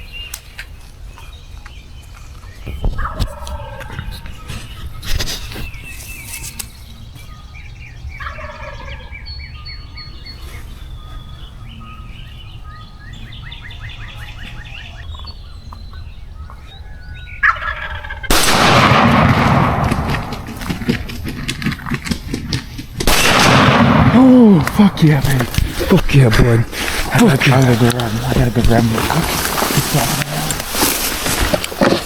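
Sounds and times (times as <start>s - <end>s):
turkey gobbling: 2.9s - 4.5s, 8.2s - 9.3s, 17.2s - 32.0s
shotgun shot: 18.3s - 20.9s, 23.0s - 25.4s
loud rustling: 18.3s - 32.0s.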